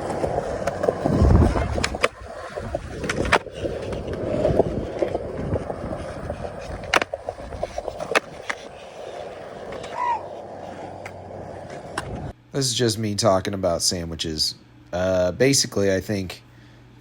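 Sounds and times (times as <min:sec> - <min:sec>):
low rumbling surge: 0:00.0 - 0:06.6
skateboard clacking: 0:00.0 - 0:12.3
skateboard wheels rolling on concrete: 0:00.0 - 0:12.4.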